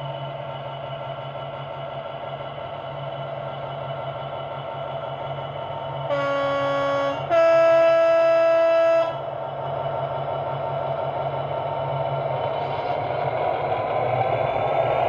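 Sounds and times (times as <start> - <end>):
two-tone horn: 6.1 - 9.3.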